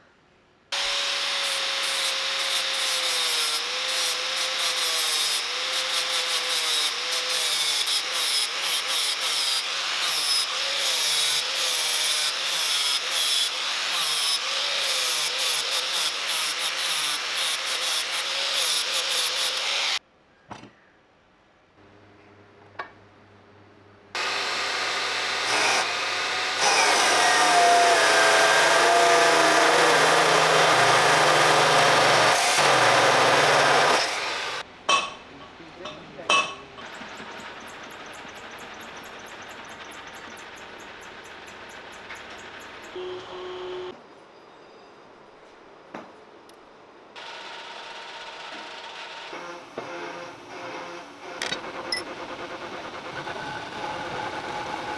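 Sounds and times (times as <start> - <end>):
angle grinder cutting metal: 0.8 - 20.0, 24.2 - 34.6
power tool running: 0.8 - 20.0, 24.2 - 34.6, 47.2 - 54.9.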